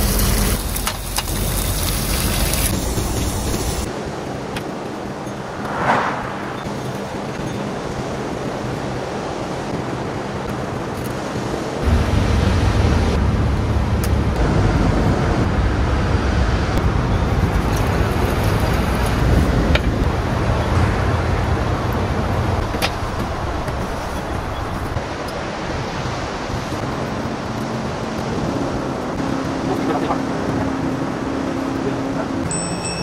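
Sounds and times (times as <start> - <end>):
road traffic: 0.0 - 33.0
ocean surf: 2.8 - 33.0
large vehicle engine rumble: 11.8 - 25.5.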